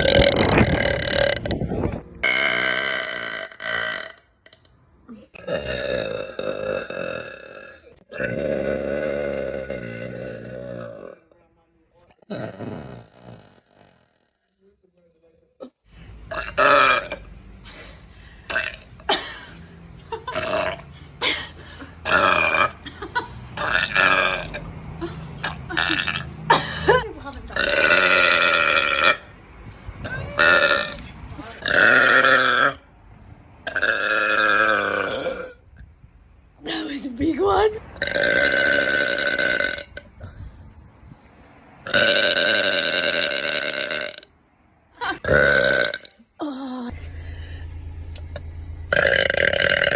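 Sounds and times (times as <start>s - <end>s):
person belching loudly: 0.0s - 4.7s, 5.3s - 11.2s, 12.2s - 14.3s, 16.3s - 17.3s, 18.5s - 19.1s, 20.3s - 20.8s, 22.0s - 22.8s, 23.6s - 24.6s, 25.4s - 26.4s, 27.5s - 29.3s, 30.0s - 31.0s, 31.6s - 32.8s, 33.7s - 35.6s, 38.0s - 40.1s, 41.8s - 44.3s, 45.2s - 46.8s, 48.3s - 49.9s.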